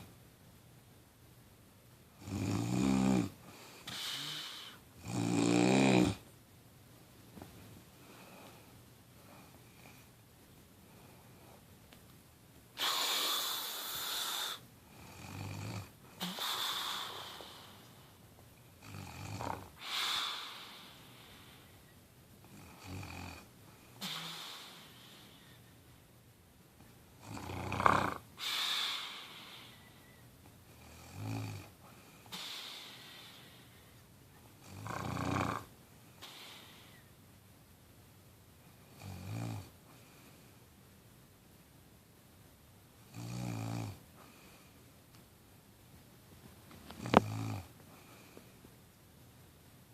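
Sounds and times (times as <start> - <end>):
slow regular snoring: 2.2 - 6.2, 12.8 - 17.6, 18.8 - 21.0, 22.5 - 23.5, 27.2 - 28.3, 30.8 - 31.7, 34.6 - 35.7, 38.9 - 39.7, 43.1 - 44.5, 46.9 - 48.4.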